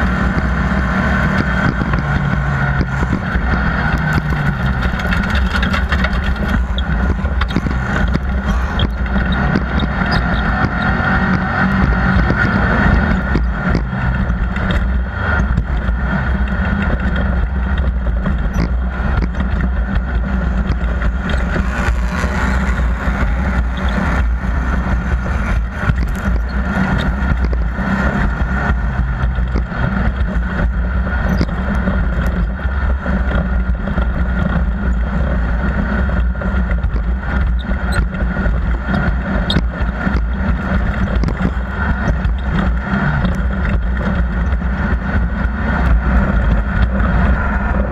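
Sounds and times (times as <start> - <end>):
race vehicle engine droning: 0.0 - 47.9
small clicks and knocks: 1.2 - 47.5.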